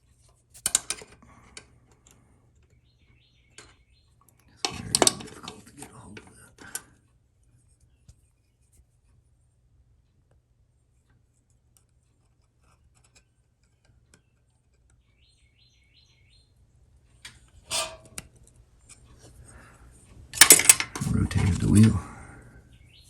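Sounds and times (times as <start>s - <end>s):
pick ticking on metal parts: 0.6s - 2.2s, 3.6s - 7.0s, 17.2s - 19.6s, 20.3s - 22.1s
metallic clatter: 4.6s - 5.7s, 17.3s - 18.3s, 20.4s - 22.0s.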